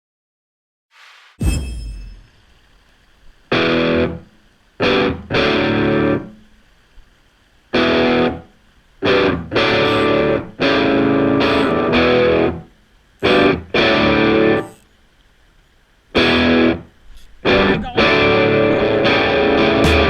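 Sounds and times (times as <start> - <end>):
distorted electric guitar chords: 3.5 - 6.5, 7.7 - 14.8, 16.2 - 20.0.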